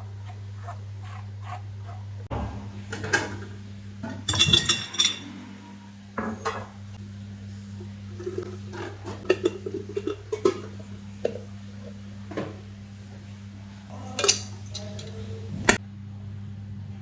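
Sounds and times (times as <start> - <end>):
steady low hum: 0.0 - 17.0
utensils and dishes clinking: 2.9 - 5.5, 13.9 - 15.8.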